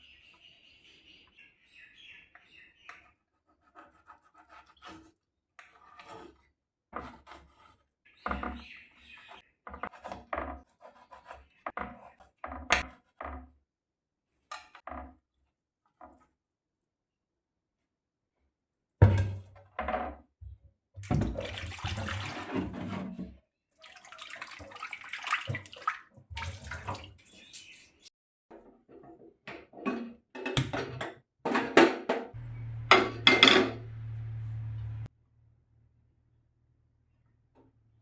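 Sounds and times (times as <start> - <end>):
water running and splashing: 21.1 - 22.6, 23.8 - 28.0
pots and dishes clattering: 29.8 - 34.1.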